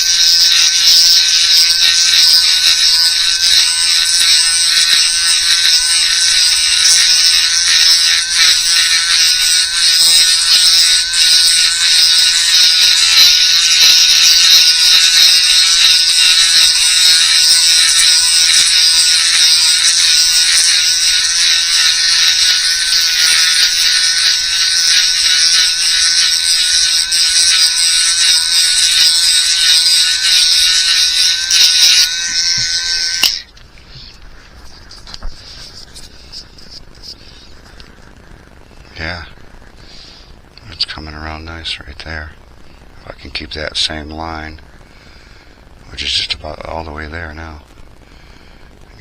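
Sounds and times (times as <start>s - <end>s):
rotary tool grinding plastic: 0.0s - 38.1s.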